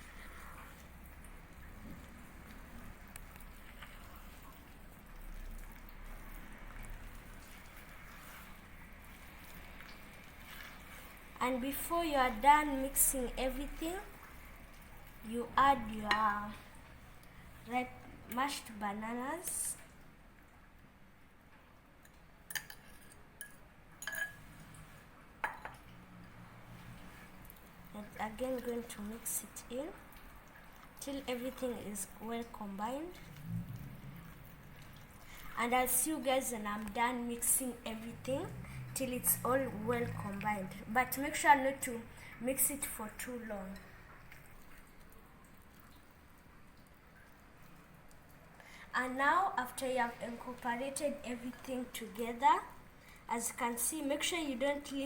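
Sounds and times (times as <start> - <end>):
utensil clinking against bowl: 22.5 - 24.4.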